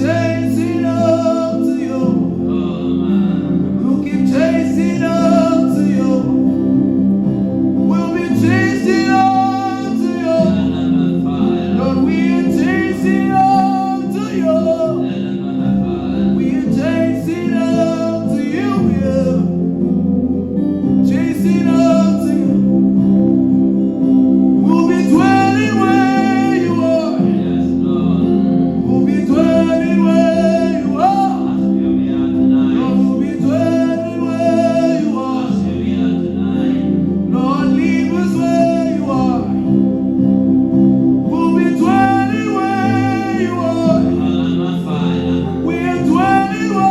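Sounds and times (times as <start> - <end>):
bass line: 0.0 - 46.9
gospel worship music: 0.0 - 46.9
singing voices: 0.0 - 46.9.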